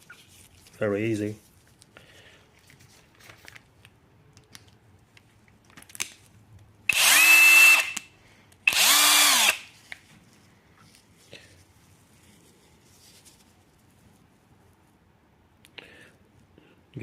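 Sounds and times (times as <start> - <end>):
electric drill whirring: 6.9 - 8.0, 8.7 - 9.7.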